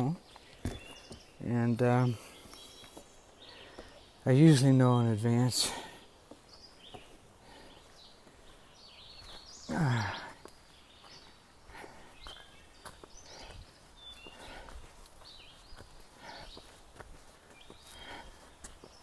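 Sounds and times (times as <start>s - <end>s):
bird chirps: 0.0s - 16.8s
footsteps on a trail: 0.0s - 19.0s
walking stick taps: 6.3s - 7.2s
person exhaling: 9.7s - 10.4s.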